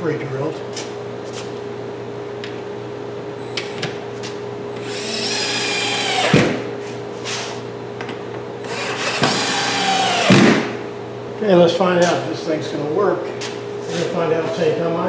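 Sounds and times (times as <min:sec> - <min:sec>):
power drill driving a screw: 0:04.8 - 0:06.5, 0:08.6 - 0:10.5.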